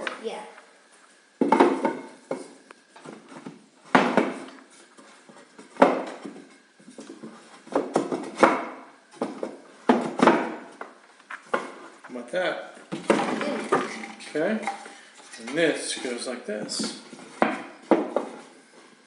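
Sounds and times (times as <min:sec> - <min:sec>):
wooden parts knocking together: 0:12.9 - 0:14.8.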